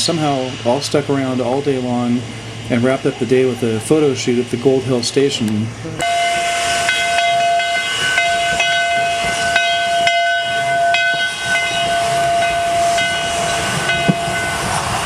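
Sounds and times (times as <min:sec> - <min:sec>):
steam hissing: 0:00.0 - 0:15.0
steam whistle blast: 0:06.0 - 0:15.0.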